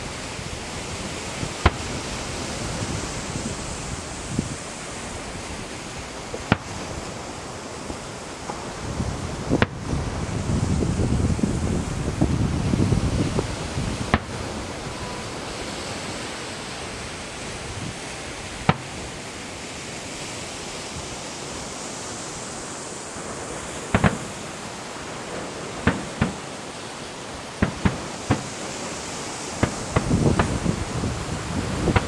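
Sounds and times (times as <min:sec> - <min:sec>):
steady background hiss: 0:00.0 - 0:32.0
distant fireworks bangs: 0:00.6 - 0:10.4, 0:12.1 - 0:19.6, 0:23.2 - 0:32.0.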